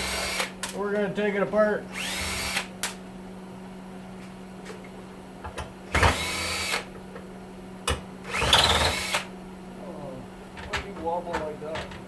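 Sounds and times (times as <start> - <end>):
cordless drill whining: 0.0 - 0.5, 1.9 - 2.7, 6.0 - 6.9, 8.3 - 9.3.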